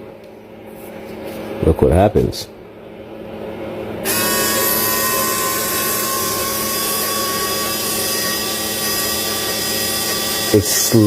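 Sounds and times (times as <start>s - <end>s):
electric winch motor whining: 4.0s - 11.0s.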